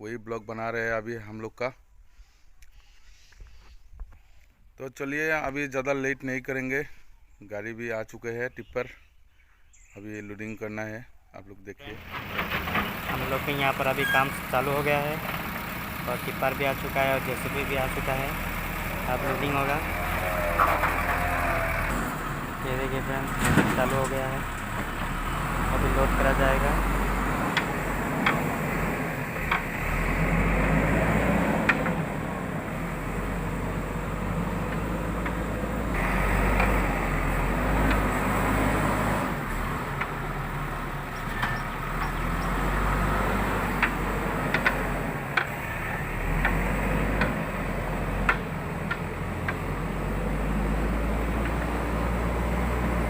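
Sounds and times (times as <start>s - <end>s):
diesel engine running: 11.9s - 53.0s
sharp clicks and knocks: 27.4s - 28.6s, 29.4s - 29.7s, 31.6s - 32.0s, 43.7s - 45.6s, 48.2s - 49.6s.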